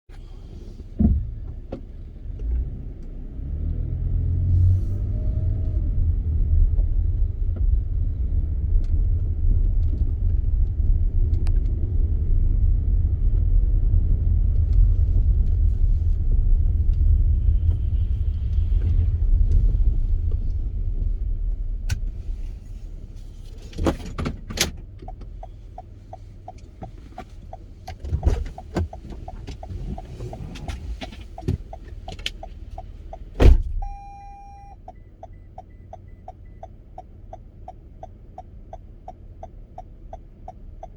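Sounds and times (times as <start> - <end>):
car road rumble from inside: 0.1 - 40.9
loud thump: 33.4 - 33.9.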